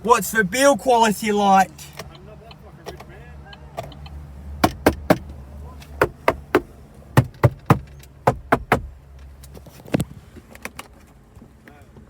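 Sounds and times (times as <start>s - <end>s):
knuckles knocking on plastic trim: 6.0s - 8.9s.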